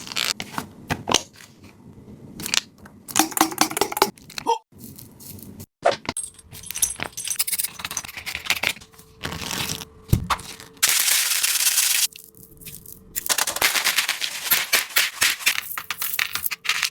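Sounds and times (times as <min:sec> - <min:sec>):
paper and tape crinkling: 0:08.1 - 0:16.9.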